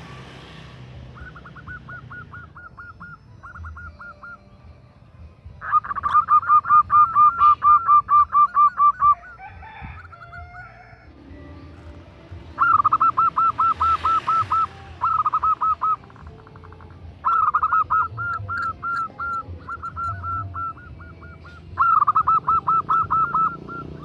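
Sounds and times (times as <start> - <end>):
dove cooing in quick notes: 12.6 - 24.0.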